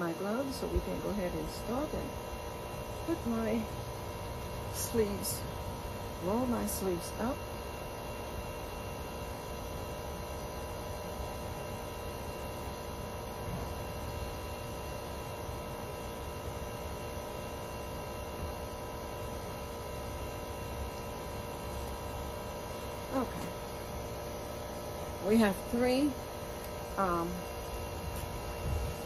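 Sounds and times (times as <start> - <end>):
machine hum with low rumble: 0.0 - 29.0.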